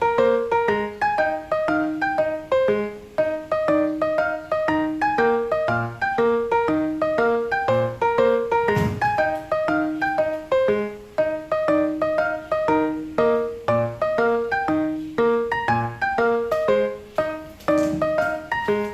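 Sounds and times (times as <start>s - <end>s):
bright quick piano music: 0.0s - 18.9s.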